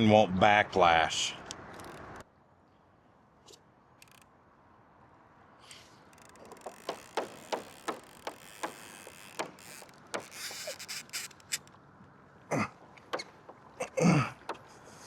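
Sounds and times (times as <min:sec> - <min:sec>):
fishing reel clicker ticking: 0:04.0 - 0:04.2, 0:06.1 - 0:11.7.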